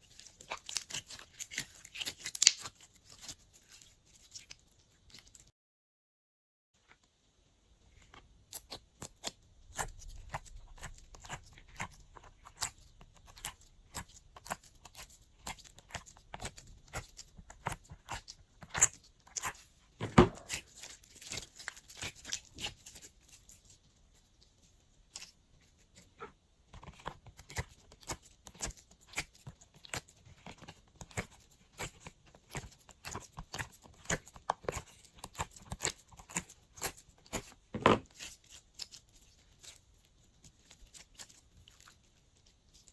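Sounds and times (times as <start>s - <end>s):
thump: 20.0s - 20.6s.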